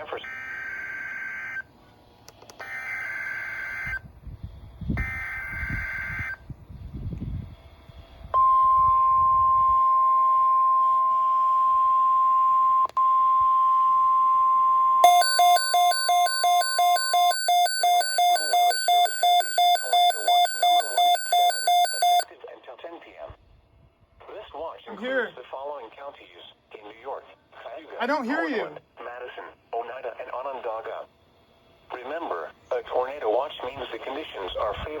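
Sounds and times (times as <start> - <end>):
pulsing electronic alarm beeping: 2.6 - 4.0, 5.0 - 6.4, 8.4 - 22.3
steady warning tone: 4.9 - 6.5, 8.2 - 22.3
screechy digital data bursts: 15.0 - 22.2.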